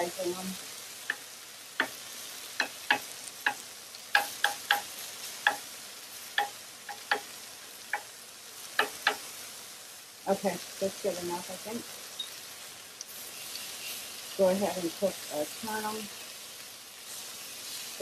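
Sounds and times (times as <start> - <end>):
chicken sizzling on a griddle: 0.0 - 18.0
metal utensil striking griddle: 2.6 - 5.6.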